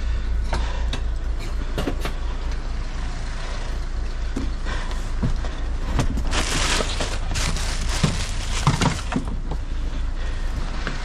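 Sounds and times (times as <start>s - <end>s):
van engine idling: 0.0s - 11.0s
rustling: 6.2s - 9.3s.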